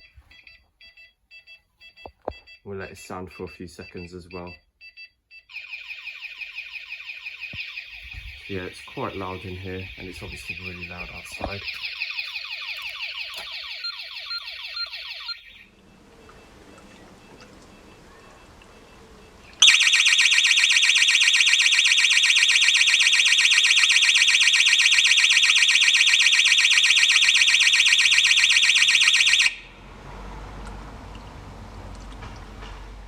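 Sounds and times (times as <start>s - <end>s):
fast-warbling alarm siren: 5.5s - 31.2s.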